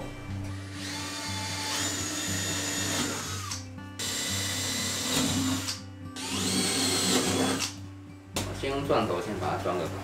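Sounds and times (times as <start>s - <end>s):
background music: 0.0s - 10.0s
electric drill motor whining: 0.5s - 7.8s.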